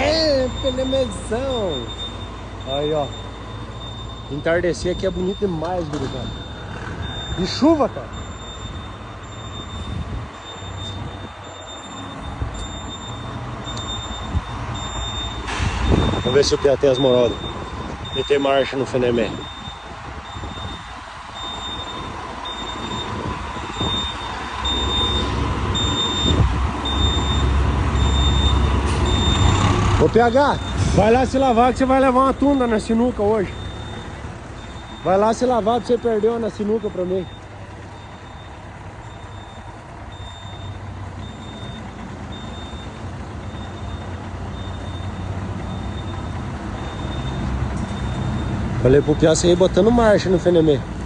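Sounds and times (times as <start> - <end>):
reversing alarm beeps: 0.0 - 50.8
diesel truck engine rumble: 0.0 - 51.0.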